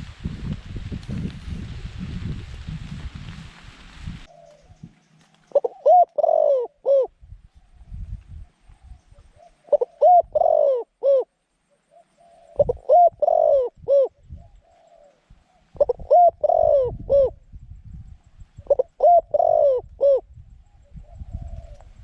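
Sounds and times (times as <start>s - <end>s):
dove cooing: 4.3s - 4.9s, 5.5s - 7.2s, 8.7s - 17.5s, 18.6s - 22.0s.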